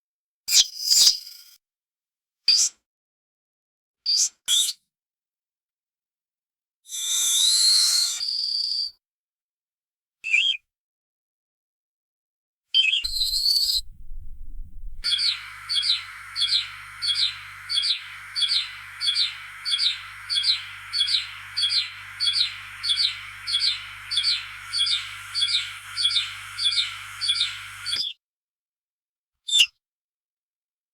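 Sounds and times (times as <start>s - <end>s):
sparrow chirping: 13.1s - 28.0s
steady hiss: 13.1s - 28.0s.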